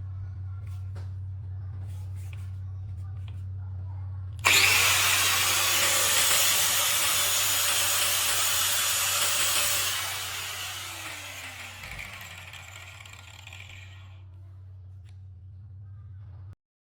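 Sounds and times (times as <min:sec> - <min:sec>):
circular saw cutting wood: 0:04.4 - 0:14.2
saw blade slowing down: 0:04.4 - 0:14.2.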